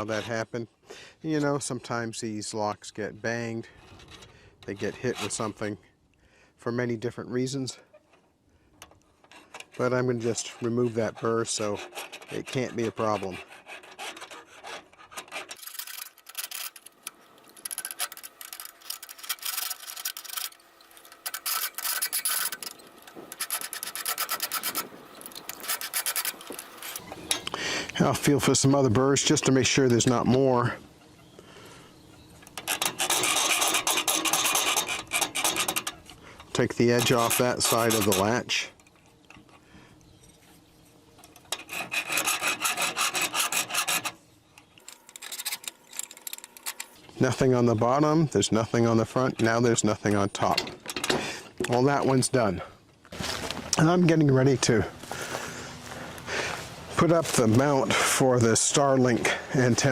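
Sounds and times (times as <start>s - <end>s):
file scraping on metal: 3.7s - 5.7s, 9.2s - 16.9s, 17.5s - 27.2s, 32.5s - 38.6s, 41.3s - 44.2s.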